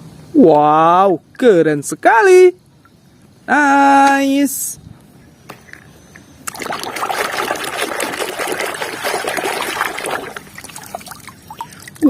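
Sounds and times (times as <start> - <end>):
water trickling and splashing: 6.5 - 12.0.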